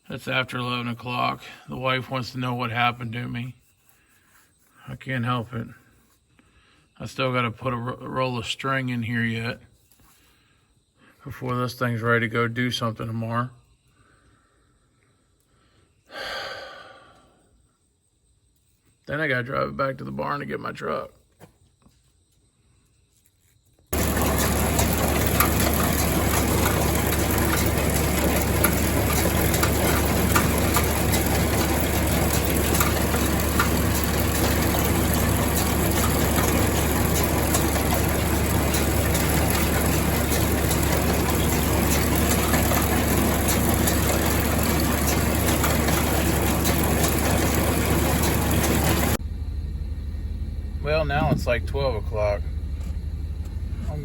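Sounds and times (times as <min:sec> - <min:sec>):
tractor engine running: 0:24.0 - 0:54.0.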